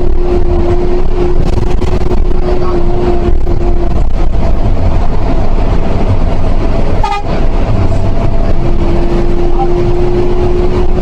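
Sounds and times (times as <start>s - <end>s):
bus engine and road rumble: 0.0s - 11.0s
short horn toot: 7.0s - 7.4s.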